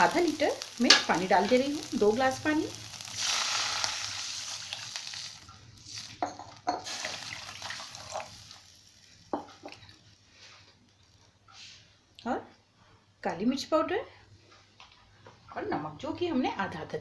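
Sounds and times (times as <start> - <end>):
water hissing in hot pan: 0.0 - 6.2, 6.8 - 9.9.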